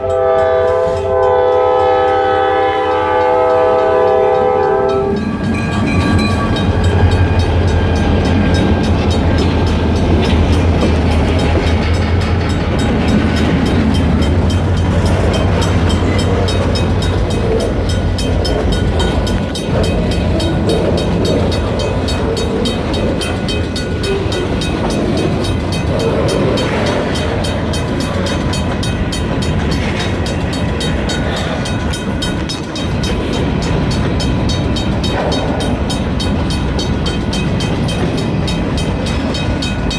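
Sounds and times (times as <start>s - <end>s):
diesel locomotive engine drone: 0.0s - 39.9s
train wheels rolling on rails: 0.0s - 39.9s.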